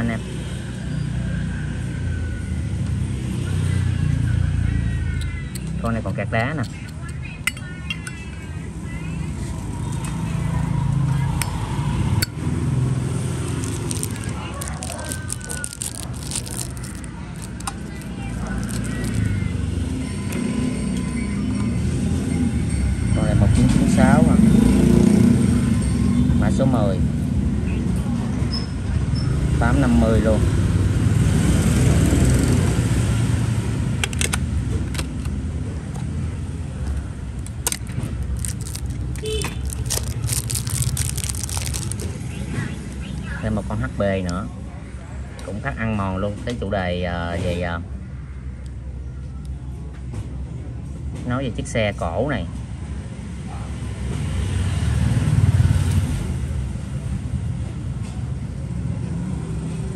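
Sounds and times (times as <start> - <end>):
rumble of passing traffic: 0.0 - 59.9.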